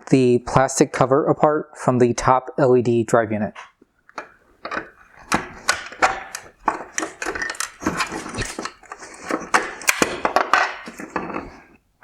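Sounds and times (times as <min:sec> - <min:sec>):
plastic scraping: 0:03.5 - 0:11.9
plastic clips clicking and snapping: 0:04.1 - 0:11.5.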